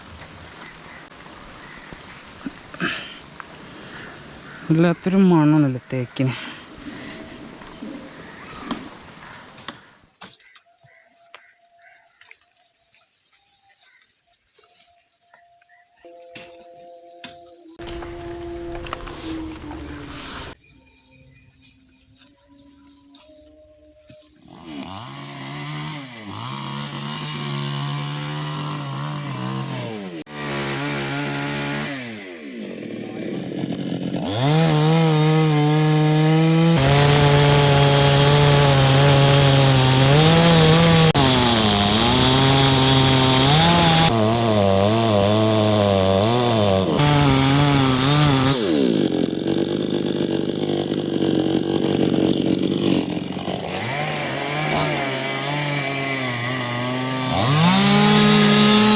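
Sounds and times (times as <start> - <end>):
chainsaw cutting wood: 17.2 - 20.6, 24.1 - 58.9.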